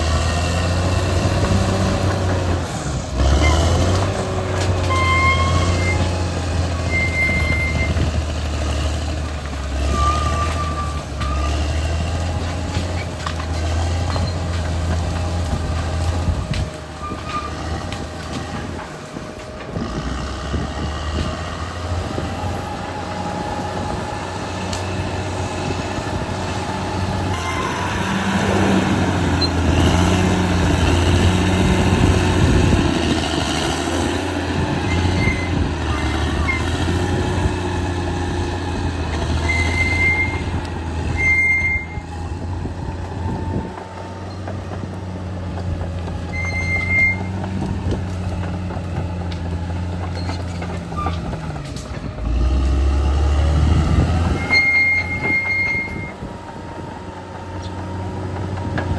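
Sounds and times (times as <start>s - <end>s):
bulldozer diesel engine running: 0.0s - 58.9s
brief high squeals: 6.8s - 8.0s, 54.4s - 56.2s.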